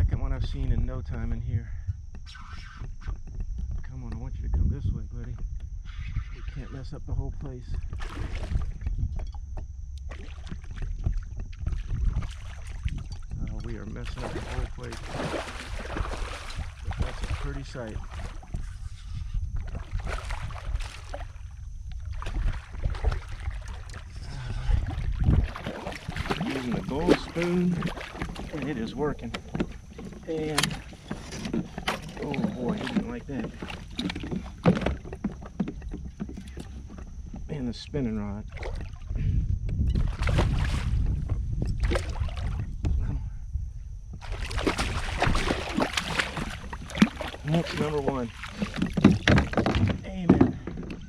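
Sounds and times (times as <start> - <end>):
wind rumble on microphone: 0.0 - 51.0
water splashing against kayak hull: 7.8 - 9.2, 10.0 - 13.3, 14.0 - 37.7, 38.4 - 43.0, 44.1 - 51.0.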